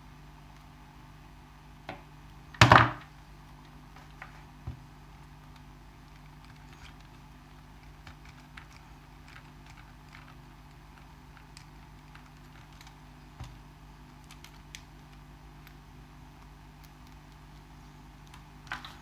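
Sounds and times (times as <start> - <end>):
steady low hum: 0.0 - 19.0
small parts clicking and tapping: 4.0 - 19.0.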